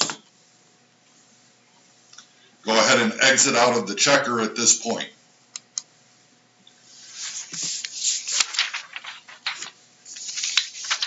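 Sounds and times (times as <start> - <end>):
rustling handling noise: 7.0 - 11.0.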